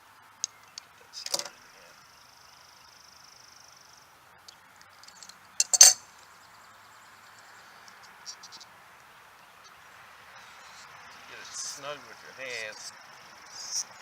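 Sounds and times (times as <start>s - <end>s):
insect trilling: 10.4s - 14.0s.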